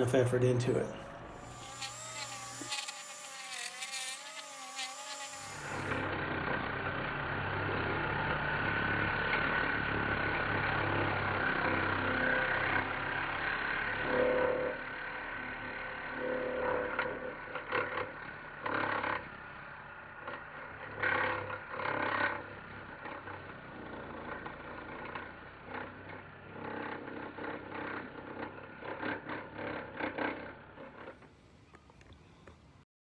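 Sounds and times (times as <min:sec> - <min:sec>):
electric motor whir: 0:01.2 - 0:06.2
blade scraping into ground: 0:01.3 - 0:06.1.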